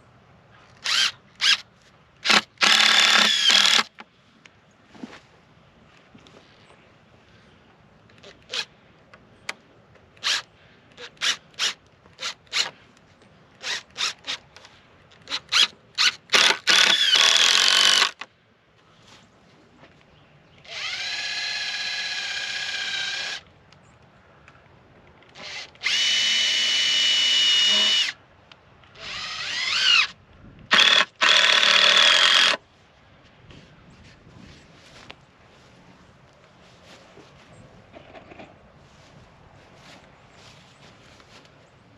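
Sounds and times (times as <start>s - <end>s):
power drill driving screws: 0.8s - 1.6s, 2.2s - 4.0s, 10.2s - 10.4s, 11.0s - 12.7s, 13.6s - 14.4s, 15.2s - 18.3s, 20.6s - 23.4s, 25.4s - 28.2s, 29.0s - 30.1s, 30.7s - 32.6s.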